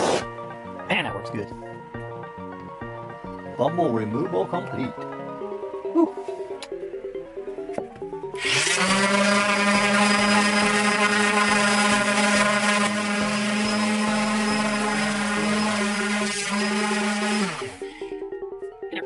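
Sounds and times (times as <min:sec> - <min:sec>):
electric power sander: 0:00.0 - 0:00.2, 0:08.4 - 0:17.9
background music: 0:00.0 - 0:19.0.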